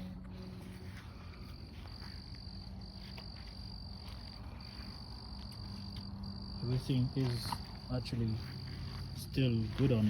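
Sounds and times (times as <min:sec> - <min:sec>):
cricket trilling: 0:00.0 - 0:10.0
low steady hum: 0:00.0 - 0:10.0.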